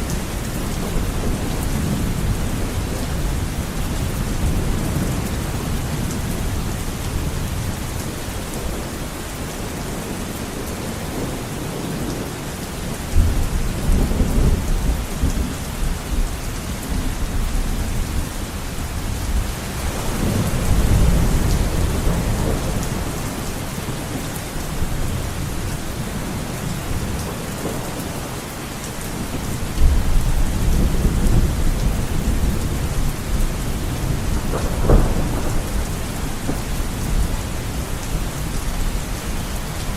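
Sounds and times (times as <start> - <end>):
heavy rain on a window: 0.0 - 39.9
thunder rumbling: 13.1 - 28.3, 29.1 - 39.9.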